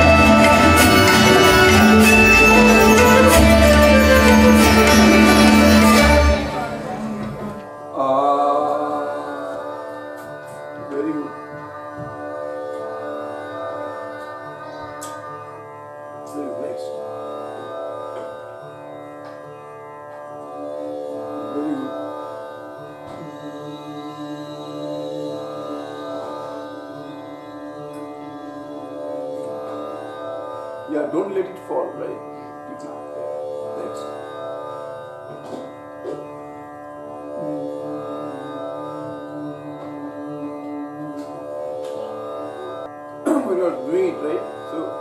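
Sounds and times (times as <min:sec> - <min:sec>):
plucked string drone: 0:00.0 - 0:09.5, 0:35.3 - 0:45.0
plucked drone strings: 0:35.3 - 0:36.5.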